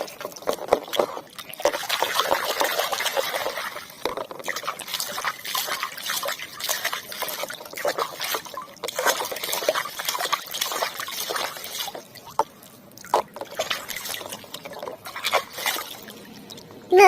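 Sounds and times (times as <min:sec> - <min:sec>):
water splashing and dripping: 0:00.0 - 0:17.0.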